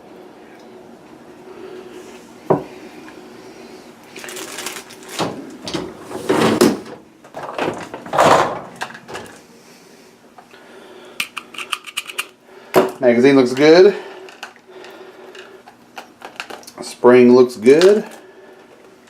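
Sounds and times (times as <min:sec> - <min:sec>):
scraping and rattling handling noises: 0:04.2 - 0:09.5, 0:15.3 - 0:16.8.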